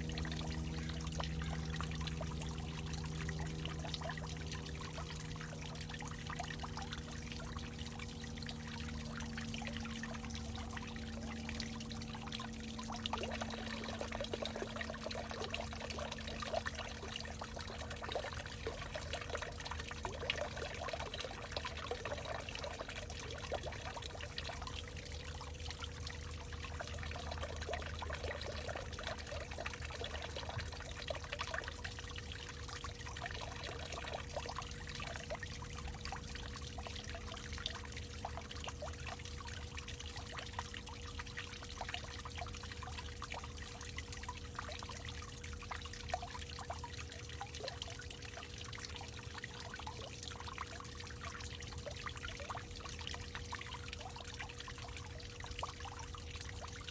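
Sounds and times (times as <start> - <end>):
low hum: 0.0 - 39.2
faint steady tone: 0.0 - 56.9
water trickling and splashing: 0.0 - 56.9.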